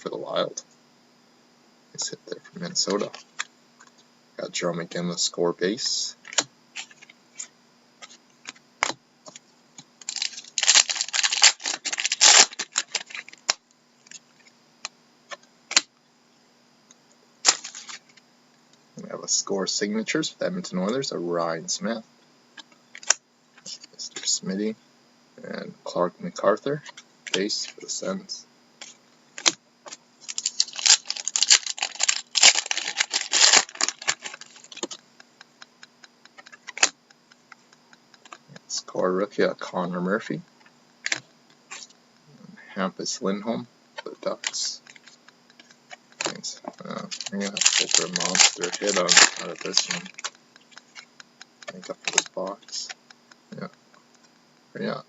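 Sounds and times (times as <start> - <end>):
cards rustling and riffling: 6.2 - 9.4, 10.0 - 14.5, 17.4 - 18.2, 26.8 - 28.0, 28.8 - 38.5, 44.0 - 53.4
trading cards clicking: 10.0 - 13.6, 47.0 - 52.4.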